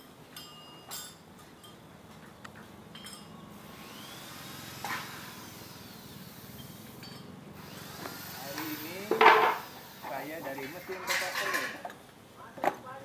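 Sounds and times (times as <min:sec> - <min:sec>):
light clinks: 0:00.0 - 0:03.6, 0:06.5 - 0:07.4.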